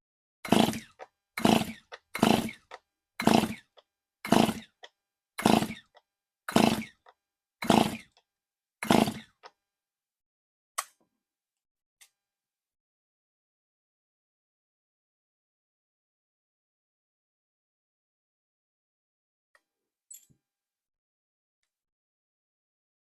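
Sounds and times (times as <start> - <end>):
chainsaw starter rope yanks: 0.4 - 8.2, 8.8 - 9.5
engine turning over: 0.5 - 3.7, 4.3 - 4.7, 5.4 - 5.9, 6.5 - 7.0, 7.6 - 8.1, 8.8 - 9.3.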